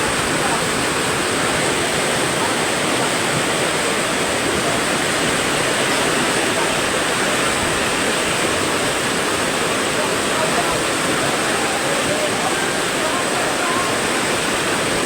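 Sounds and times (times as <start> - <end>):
water rushing: 0.0 - 15.0.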